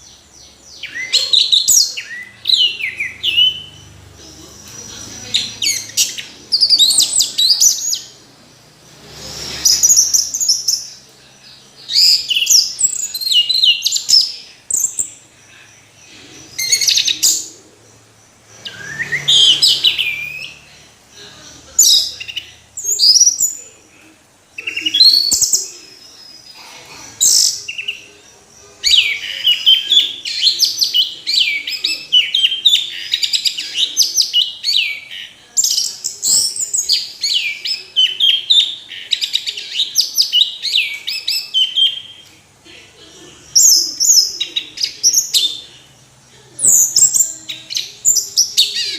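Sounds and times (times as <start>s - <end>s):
bird singing whistles and chirps: 18.6s - 20.6s.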